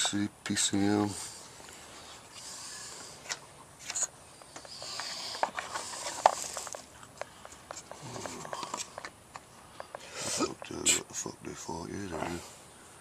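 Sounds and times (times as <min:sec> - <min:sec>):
faint rustling of hands: 0:01.6 - 0:10.5.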